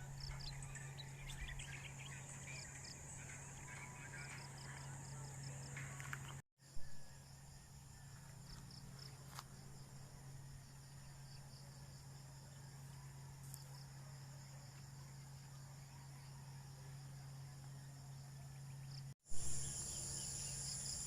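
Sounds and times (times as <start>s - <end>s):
insects chirping: 0.0s - 21.0s.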